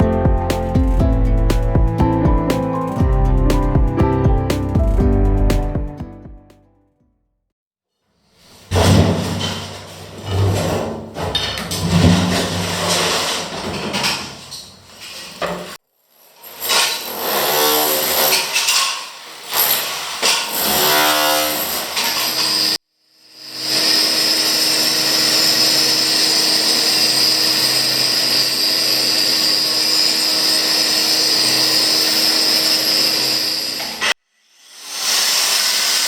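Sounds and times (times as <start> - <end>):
power tool running: 19.4 - 36.0.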